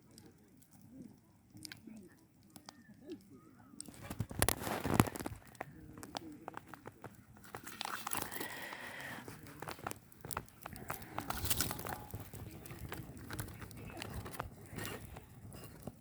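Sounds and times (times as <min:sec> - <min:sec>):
campfire crackling and popping: 0:00.0 - 0:16.0
rustling and crunching: 0:00.0 - 0:16.0
low bird calls: 0:02.5 - 0:04.0.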